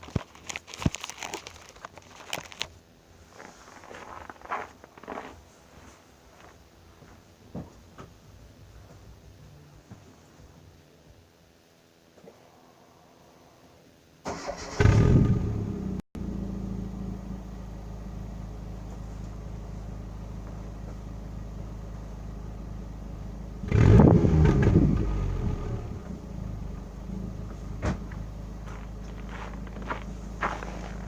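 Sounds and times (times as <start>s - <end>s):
car engine starting and idling: 14.2s - 31.0s
car engine revving: 14.3s - 31.0s.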